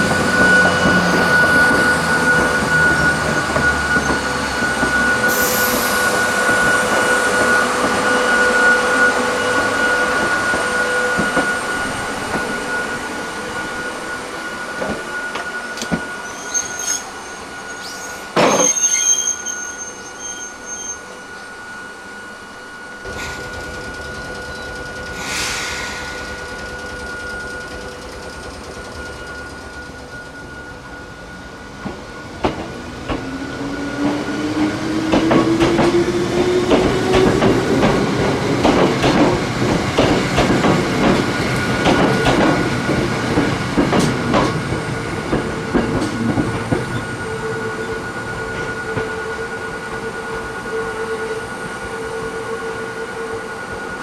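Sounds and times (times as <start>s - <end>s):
train wheels squealing: 0.0s - 54.0s
train wheels clacking: 31.8s - 50.1s.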